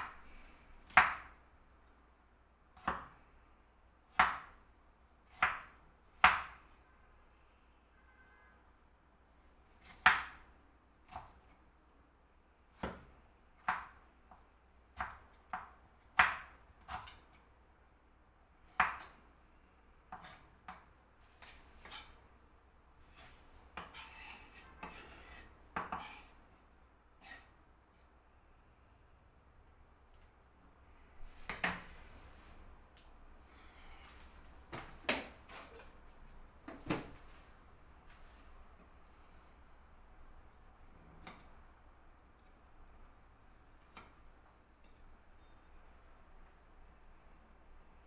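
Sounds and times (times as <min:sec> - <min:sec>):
food scraped across board: 0:23.0 - 0:26.4
knife cutting on chopping board: 0:23.2 - 0:26.3.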